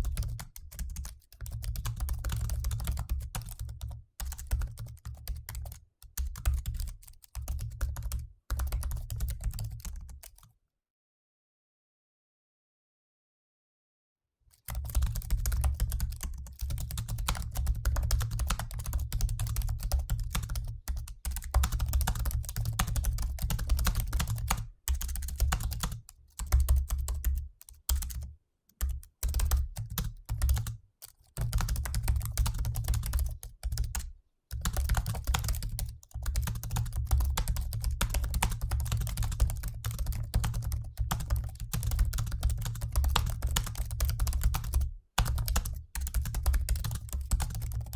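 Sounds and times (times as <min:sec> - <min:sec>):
fast typing on laptop keyboard: 0:00.0 - 0:10.4, 0:14.7 - 0:47.9.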